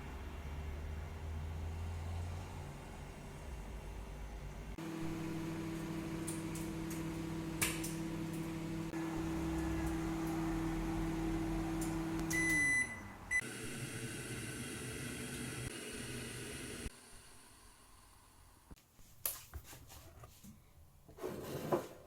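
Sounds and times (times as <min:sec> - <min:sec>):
appliance motor humming: 0:04.8 - 0:18.7.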